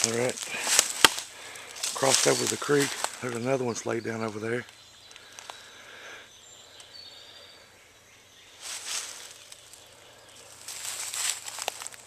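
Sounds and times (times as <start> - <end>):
footsteps rustling dry leaves: 0.0 - 3.7, 8.6 - 12.0.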